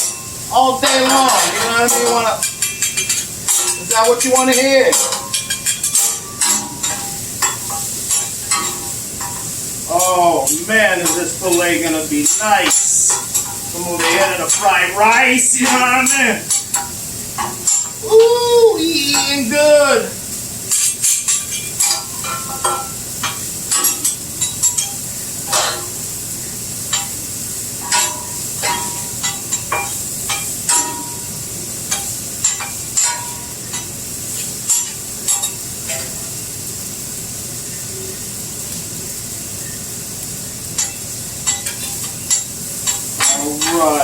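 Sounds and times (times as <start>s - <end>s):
metal spatulas scraping and clinking: 0.0s - 9.4s
food sizzling on a grill: 0.0s - 44.0s.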